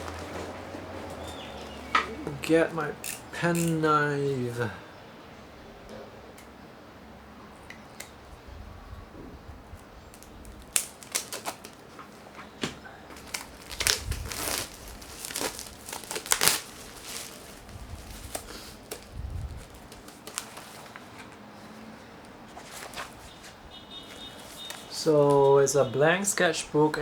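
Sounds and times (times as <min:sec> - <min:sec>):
wrapping tearing and crumpling: 0:10.1 - 0:12.4, 0:13.1 - 0:21.4.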